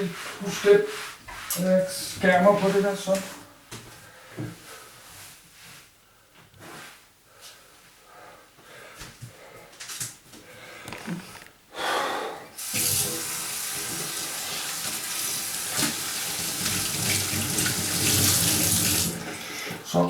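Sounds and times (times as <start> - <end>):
water gush: 12.6 - 19.4
tap running into sink: 12.7 - 19.2.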